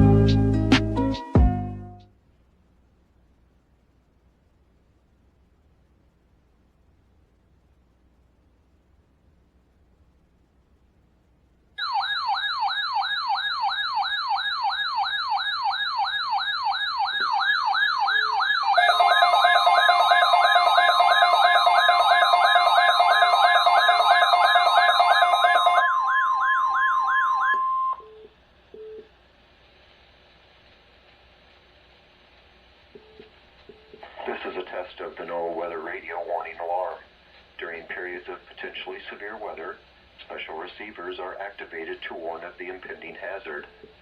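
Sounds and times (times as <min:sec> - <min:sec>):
warbling siren alarm: 0:11.8 - 0:28.1
steady high warning tone: 0:11.8 - 0:28.2.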